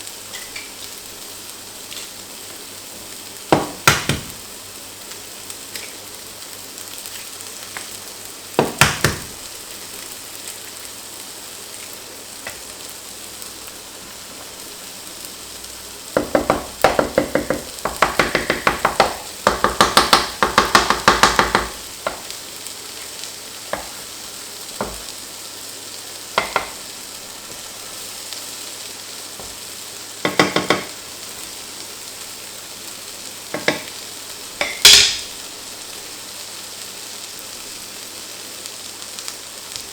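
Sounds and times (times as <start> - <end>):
food sizzling in pan: 0.0 - 39.9.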